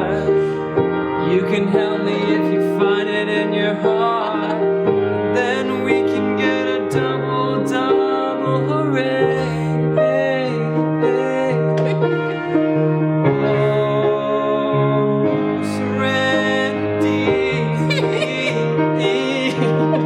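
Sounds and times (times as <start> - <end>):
piano chords: 0.0 - 20.0
person singing wavering melody: 13.4 - 20.0.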